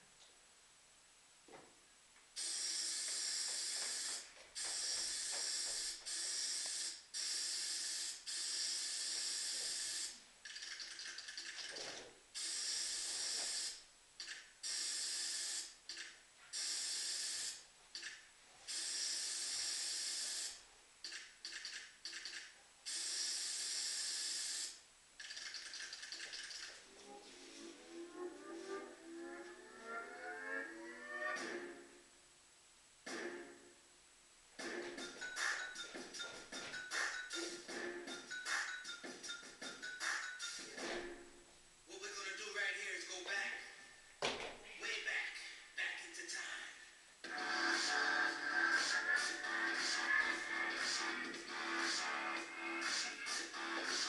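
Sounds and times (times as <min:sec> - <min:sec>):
spray paint hissing: 0:02.4 - 0:11.5, 0:12.4 - 0:13.8, 0:14.6 - 0:15.8, 0:16.5 - 0:18.1, 0:18.7 - 0:22.3, 0:22.9 - 0:26.7.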